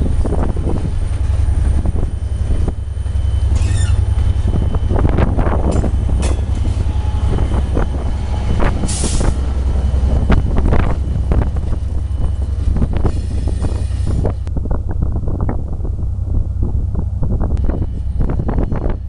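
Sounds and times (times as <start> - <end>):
train clanks and knocks: 0.0 - 16.0, 16.6 - 19.0
freight train rumbling: 0.0 - 19.0.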